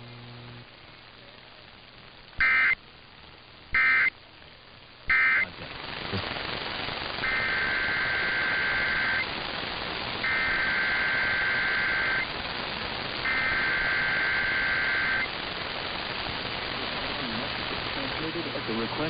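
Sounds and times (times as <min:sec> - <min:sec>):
radio static: 0:00.0 - 0:02.8, 0:03.5 - 0:19.0
two-pitch digital data tones: 0:02.4 - 0:02.8, 0:03.8 - 0:04.1, 0:05.1 - 0:05.6, 0:07.2 - 0:09.3, 0:10.2 - 0:12.3, 0:13.2 - 0:15.3.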